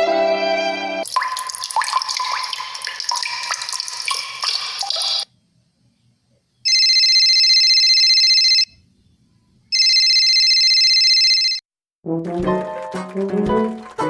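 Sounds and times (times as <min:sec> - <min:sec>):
water drops plinking: 0:01.0 - 0:05.3.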